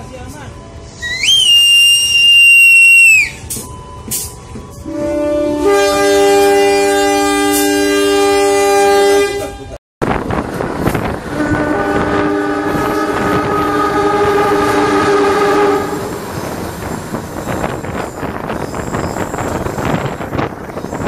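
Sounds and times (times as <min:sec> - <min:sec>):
train rumbling past on rails: 0:00.0 - 0:21.0
locomotive air horn blast: 0:04.8 - 0:09.8, 0:11.3 - 0:16.2.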